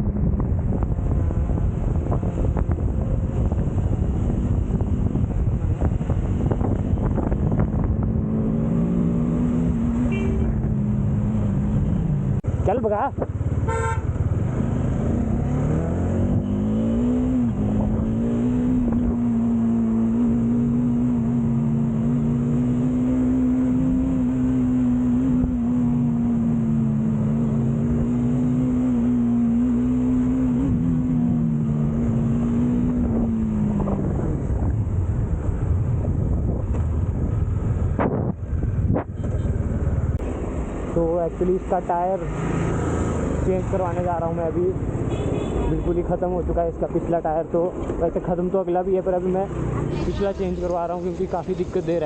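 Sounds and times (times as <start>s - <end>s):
wind rushing: 0.0s - 9.1s.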